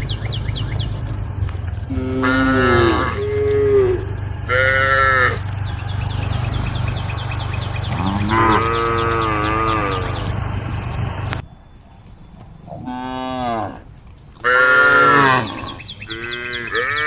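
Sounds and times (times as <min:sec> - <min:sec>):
cows mooing: 0:00.0 - 0:11.4, 0:12.7 - 0:17.0
fast high ticking: 0:00.0 - 0:11.4.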